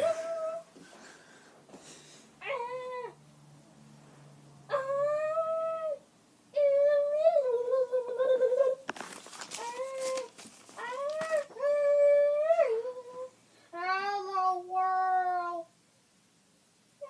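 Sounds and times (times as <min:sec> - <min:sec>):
boy making high-pitched vocal noises: 0:04.7 - 0:08.8, 0:09.6 - 0:15.7.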